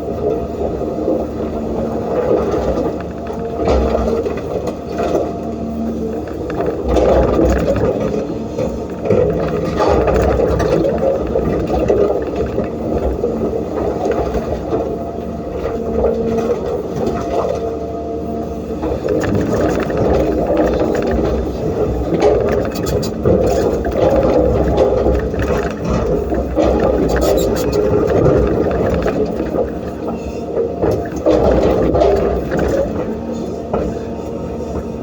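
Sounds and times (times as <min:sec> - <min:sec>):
excavator diesel engine running: 0:00.0 - 0:35.0
bucket scraping sand and stones: 0:21.9 - 0:29.3.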